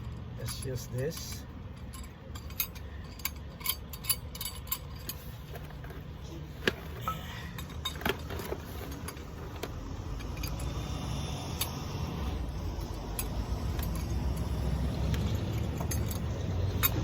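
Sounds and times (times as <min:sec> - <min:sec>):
steady low rumble: 0:00.0 - 0:17.0
metallic clinks of hand tools: 0:00.4 - 0:05.2, 0:12.9 - 0:17.0.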